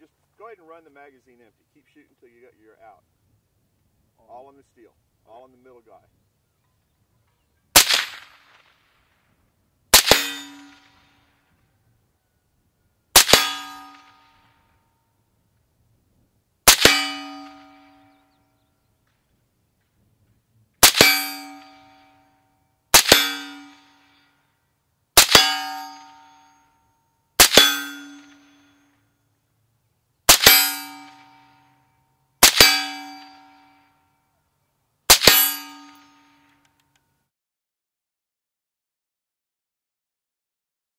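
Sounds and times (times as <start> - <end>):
rifle shots: 7.7 - 9.2, 9.9 - 11.4, 13.1 - 14.6, 16.6 - 18.2, 20.8 - 22.0, 22.9 - 24.2, 25.2 - 26.5, 27.4 - 28.8, 30.3 - 31.5, 32.4 - 33.6, 35.1 - 36.4
bullet hitting ringing steel target: 10.0 - 11.3, 13.2 - 14.8, 16.7 - 18.7, 20.8 - 24.4, 25.2 - 29.1, 30.3 - 34.1, 35.1 - 36.8.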